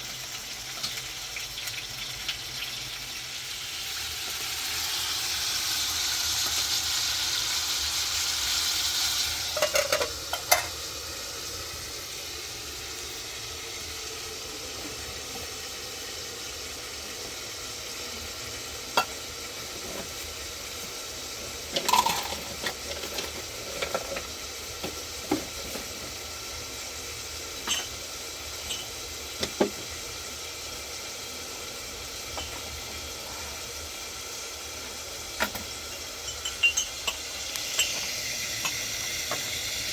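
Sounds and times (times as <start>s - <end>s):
faint sizzle: 0.0s - 39.9s
loud cooking hiss: 0.0s - 39.9s
utensil clinking against pan: 35.4s - 38.8s.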